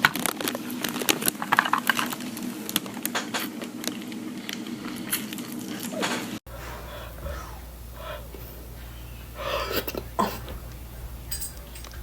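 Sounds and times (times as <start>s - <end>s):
irregular clicks and crackles: 0.0s - 6.2s
steady low hum: 6.4s - 12.0s.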